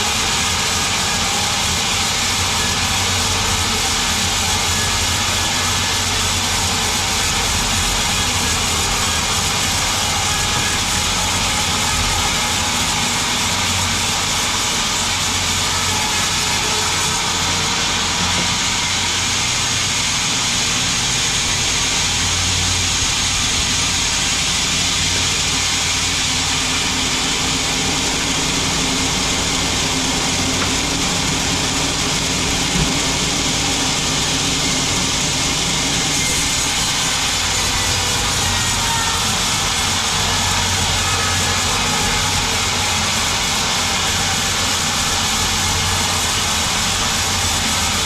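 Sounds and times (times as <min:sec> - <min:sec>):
sawmill machinery hiss: 0:00.0 - 0:48.0
low engine hum: 0:20.6 - 0:39.2.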